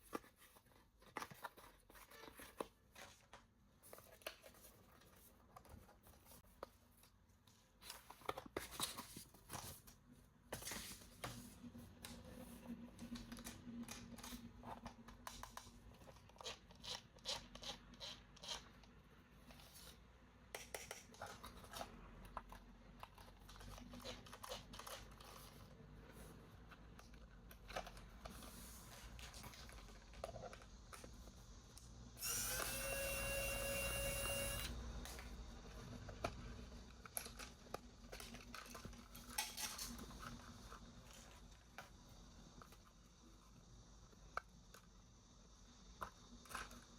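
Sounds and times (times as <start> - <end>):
toy packaging clicks and crinkles: 36.1 - 40.4.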